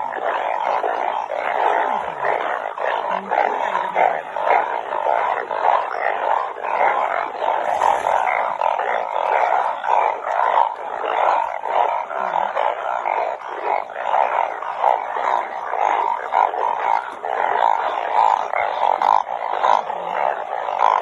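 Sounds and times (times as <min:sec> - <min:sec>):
chorus of frogs croaking: 0:00.0 - 0:21.0.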